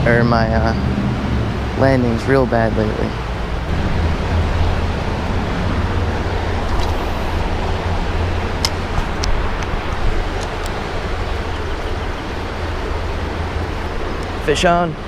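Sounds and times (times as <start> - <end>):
creek water rushing: 0.0 - 15.0.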